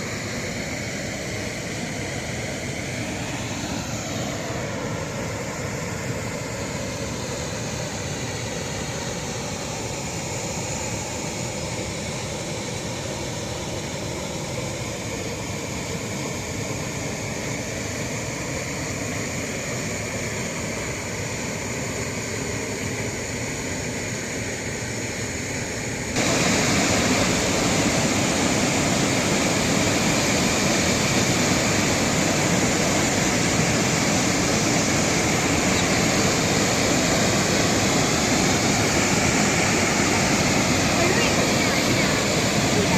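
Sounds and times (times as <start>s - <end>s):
aircraft droning overhead: 0.0s - 42.9s
waterfall rushing: 26.2s - 42.9s.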